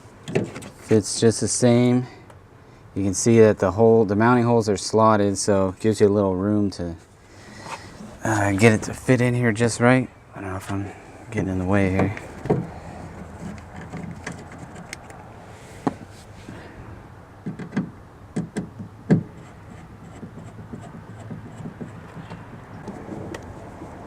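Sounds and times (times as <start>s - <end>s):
speaker mount clicks and knocks: 0.2s - 0.8s, 11.9s - 15.2s, 17.4s - 19.4s, 20.2s - 23.5s.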